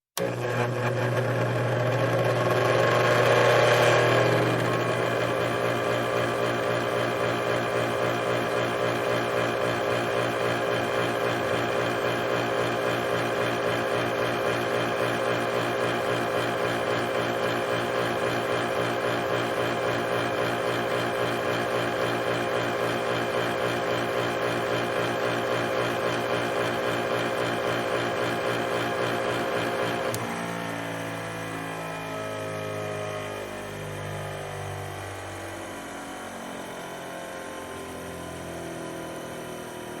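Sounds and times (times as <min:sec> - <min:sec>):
power grinder motor: 0:00.2 - 0:32.0.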